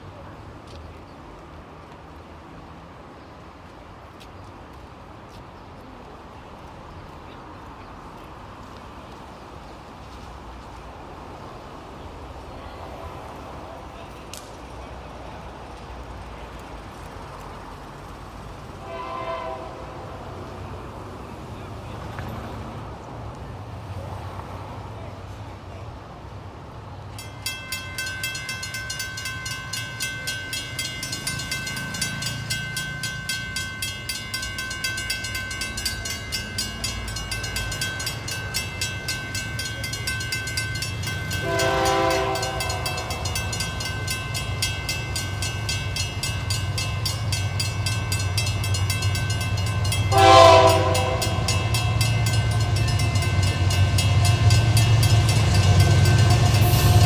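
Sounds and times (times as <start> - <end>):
locomotive engine rumble: 7.3 - 25.6, 26.6 - 57.0
locomotive horn blasts: 18.8 - 20.6, 41.0 - 44.1, 49.6 - 57.0
high ring from rails: 27.2 - 57.0
train wheels clacking: 27.2 - 57.0.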